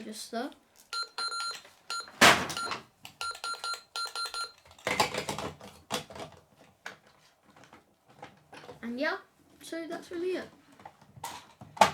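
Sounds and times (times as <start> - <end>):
toy cash register beeping: 0.9 - 4.7
knocks and rattles of toy handling: 0.9 - 8.9, 10.1 - 11.9
plastic clatter: 4.6 - 8.8, 10.8 - 11.9.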